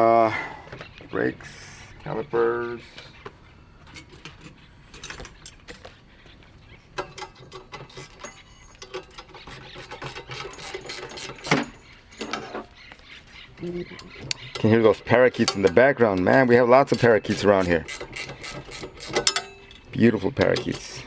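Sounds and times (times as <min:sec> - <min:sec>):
hand tools clicking and clinking: 0:03.8 - 0:05.9, 0:07.0 - 0:12.6, 0:13.9 - 0:21.0.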